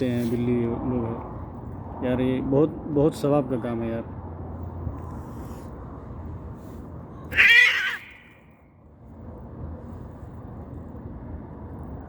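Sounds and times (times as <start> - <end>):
cat meowing loudly: 7.3 - 8.5.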